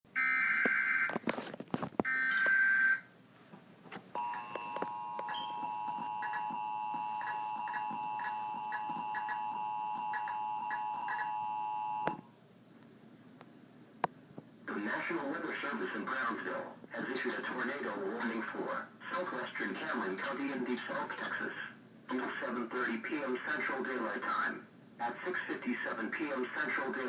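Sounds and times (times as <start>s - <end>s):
two-tone attention signal: 4.2s - 12.2s.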